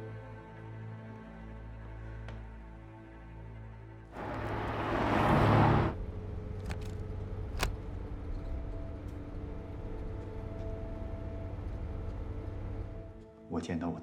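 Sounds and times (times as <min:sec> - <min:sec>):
car rushing past: 0:04.2 - 0:06.0
low engine rumble: 0:04.2 - 0:07.7
sharp clicks: 0:06.6 - 0:07.0.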